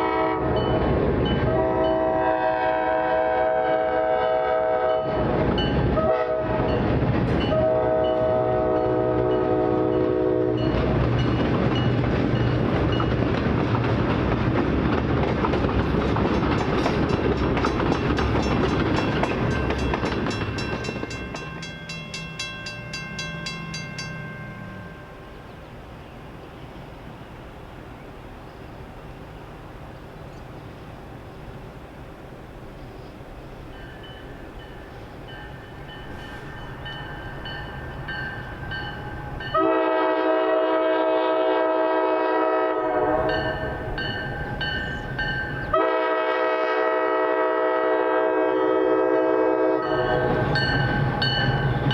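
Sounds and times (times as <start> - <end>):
locomotive air horn blasts: 0.0 - 0.8, 1.4 - 6.9, 7.5 - 10.8, 39.5 - 43.8, 45.7 - 50.6
train wheels clicking over rails: 10.6 - 24.2
rushing wheel noise: 10.7 - 25.5, 49.9 - 51.9.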